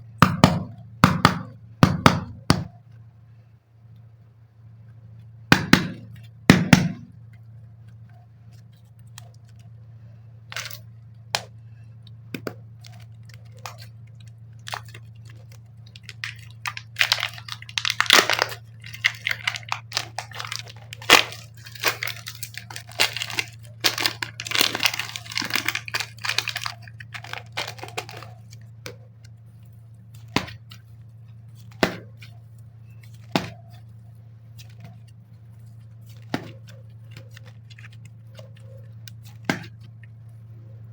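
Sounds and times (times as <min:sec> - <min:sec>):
packaging crackling and tearing: 0:12.8 - 0:28.8.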